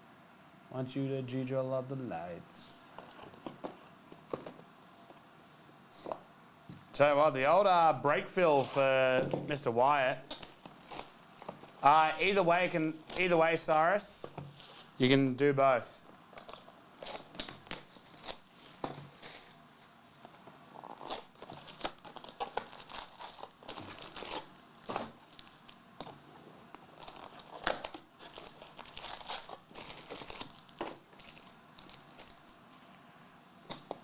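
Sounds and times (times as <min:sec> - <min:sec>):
plastic wrappers crackling and ripping: 0:08.4 - 0:15.0, 0:16.0 - 0:32.6.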